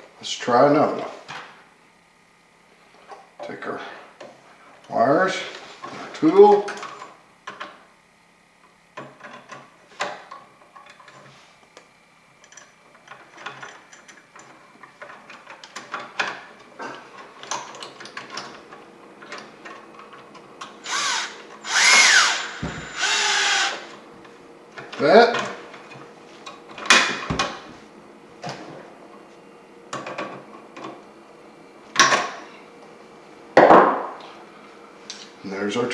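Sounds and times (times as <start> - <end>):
electric drill running: 20.8 - 23.9.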